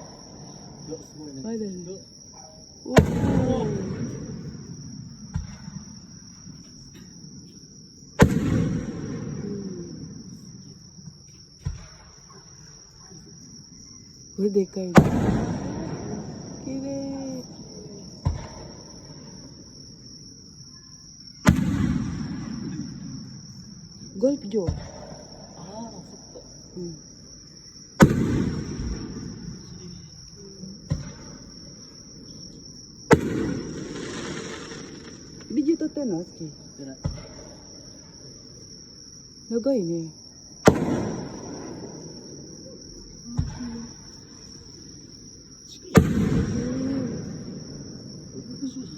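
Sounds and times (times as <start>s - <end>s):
firework shells booming: 0.0s - 13.6s, 14.9s - 39.3s, 40.4s - 48.6s
insects chirring: 0.0s - 48.9s
firework shell bursts: 33.1s - 35.5s.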